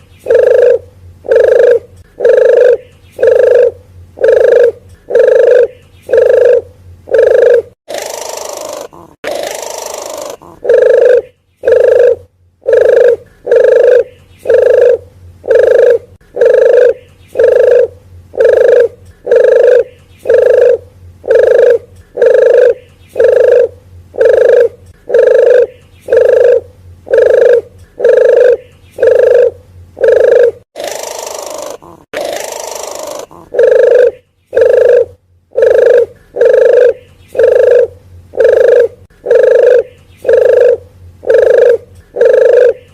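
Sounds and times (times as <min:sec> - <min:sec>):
dove cooing: 0:00.2 - 0:42.9.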